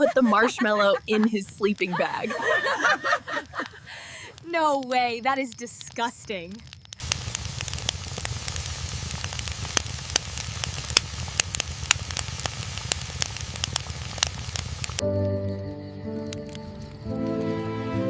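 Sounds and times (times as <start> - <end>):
campfire crackling and popping: 0.0 - 17.7
music: 15.0 - 18.0.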